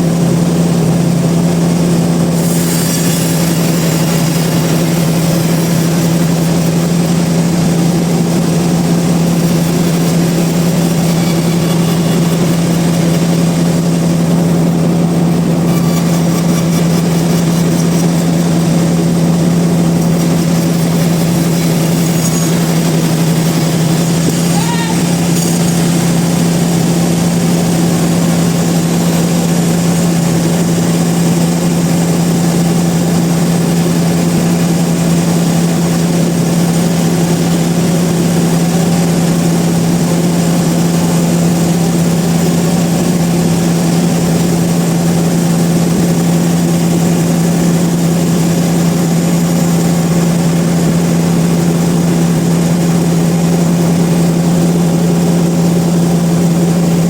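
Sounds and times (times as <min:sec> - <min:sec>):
sawmill machinery droning: 0:00.0 - 0:57.0.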